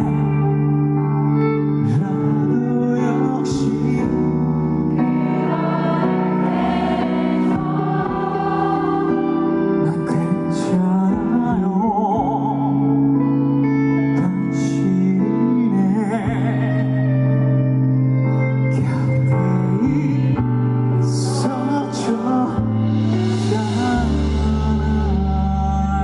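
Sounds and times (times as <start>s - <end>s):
live band playing pop ballad: 0.0s - 26.0s
person singing: 0.0s - 26.0s.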